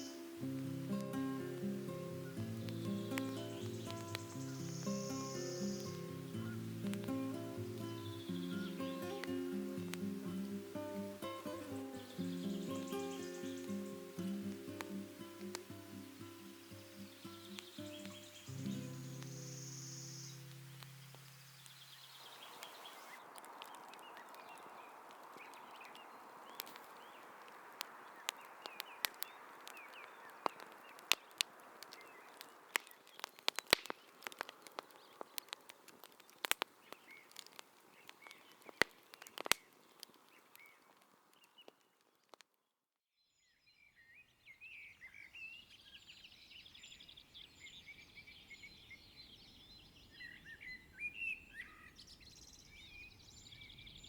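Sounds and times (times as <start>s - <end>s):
birds chirping: 0.0s - 35.6s
campfire crackling and popping: 0.0s - 42.5s.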